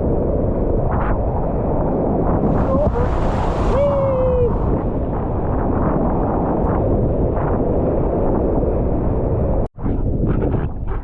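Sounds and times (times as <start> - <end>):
wind buffeting microphone: 0.0 - 11.0
whitewater rushing: 2.4 - 5.6.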